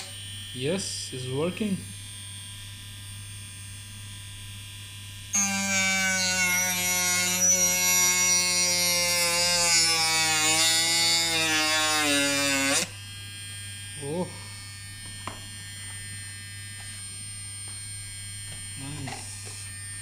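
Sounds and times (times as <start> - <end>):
rotary tool whining: 5.3 - 20.0.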